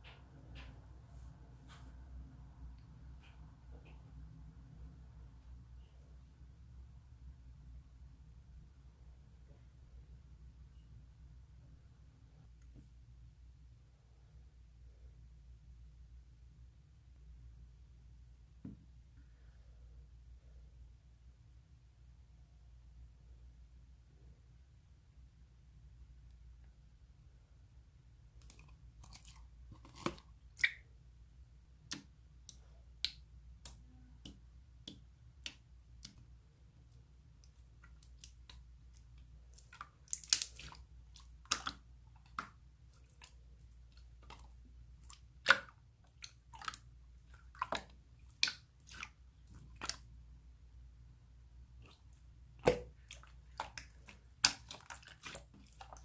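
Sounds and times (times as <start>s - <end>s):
faint low hum: 0.0s - 56.0s
slime squished by hand: 37.4s - 50.2s, 51.7s - 56.0s.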